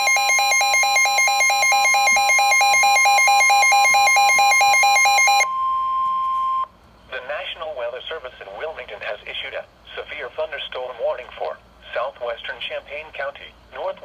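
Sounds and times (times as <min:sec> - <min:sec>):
warbling alert alarm: 0:00.0 - 0:05.5
steady warning tone: 0:00.0 - 0:06.7.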